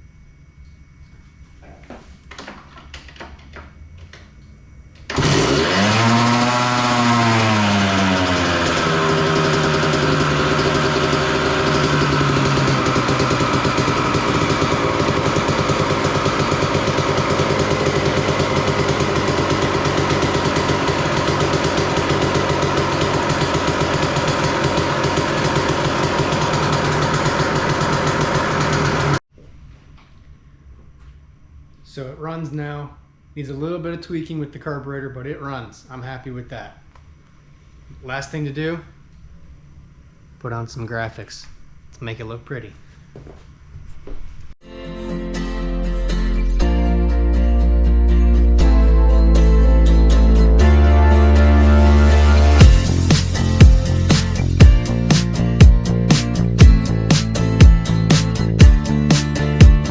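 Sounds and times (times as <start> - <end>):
two-stroke engine revving and idling: 5.1 - 29.2, 50.1 - 59.9.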